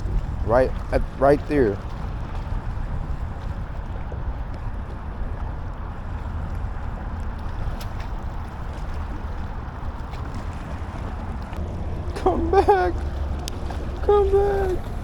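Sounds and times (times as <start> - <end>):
wind buffeting microphone: 0.0 - 15.0
faint clicks: 13.3 - 13.8.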